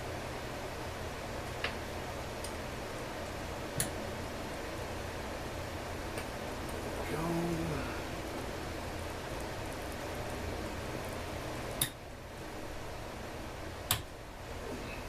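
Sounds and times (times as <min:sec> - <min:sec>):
background hiss: 0:06.1 - 0:11.4.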